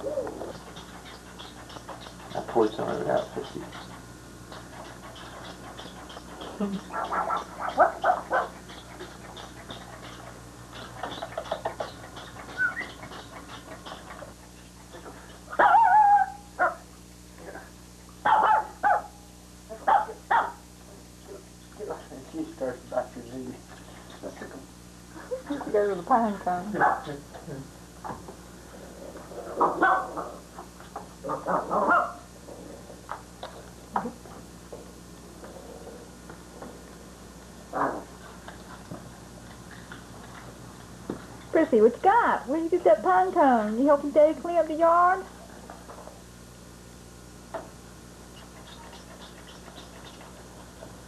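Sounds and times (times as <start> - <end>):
small dog vocalizing: 0.0 - 16.7, 29.1 - 34.2, 48.4 - 50.9
dog barking: 6.9 - 8.6, 15.5 - 16.8, 18.2 - 19.2, 19.8 - 20.6, 26.8 - 27.2, 29.6 - 30.3, 31.3 - 32.3
dog whiny yelp: 11.1 - 14.3, 15.0 - 16.8.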